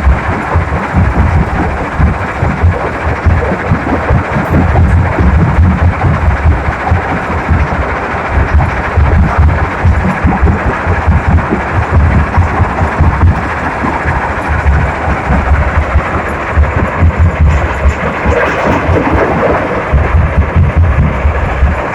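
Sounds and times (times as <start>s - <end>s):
diesel engine rumbling: 0.0s - 21.9s
low thudding: 18.8s - 21.9s.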